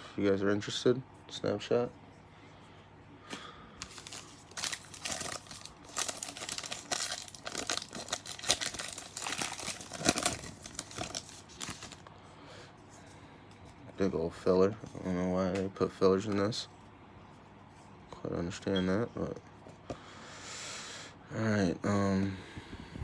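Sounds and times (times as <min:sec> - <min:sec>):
wrapper crinkling and tearing: 0:03.8 - 0:12.1.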